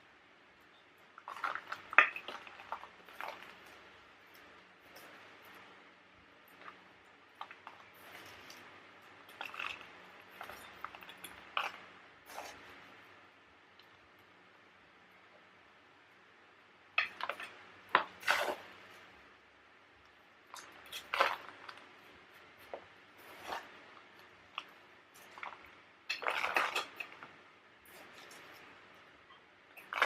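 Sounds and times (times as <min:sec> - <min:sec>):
scraping in a clay pot: 0:07.4 - 0:12.9, 0:17.1 - 0:19.1, 0:20.5 - 0:21.9, 0:22.6 - 0:28.8, 0:29.8 - 0:30.0.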